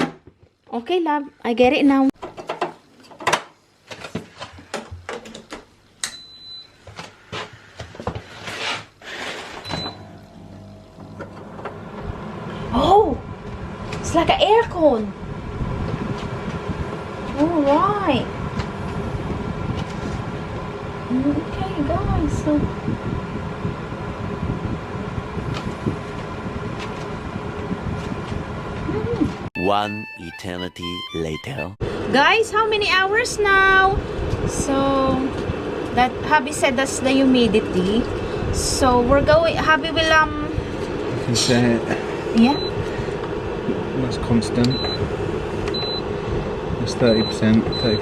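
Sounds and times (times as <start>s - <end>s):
dehumidifier humming: 9.5s - 48.0s
short electronic beeps: 9.6s - 10.2s, 42.4s - 42.8s, 44.7s - 45.0s, 45.7s - 46.0s, 47.1s - 48.0s.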